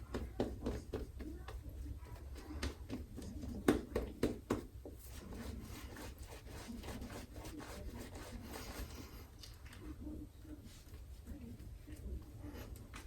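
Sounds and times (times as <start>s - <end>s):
shaving brush wet rubbing: 5.1s - 9.0s.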